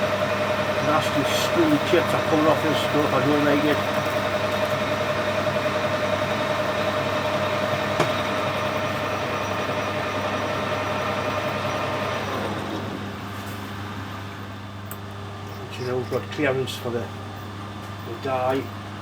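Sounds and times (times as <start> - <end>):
metal lathe whining: 0.0 - 13.2
lathe humming: 0.0 - 14.0.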